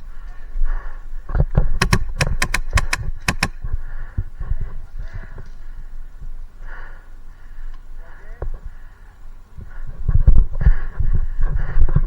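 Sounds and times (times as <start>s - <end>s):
airsoft gun shots: 1.8s - 3.6s.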